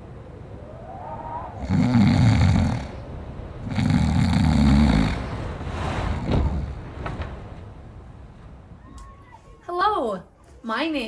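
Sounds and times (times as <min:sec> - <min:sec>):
person snoring: 0:01.6 - 0:03.0, 0:03.6 - 0:05.3.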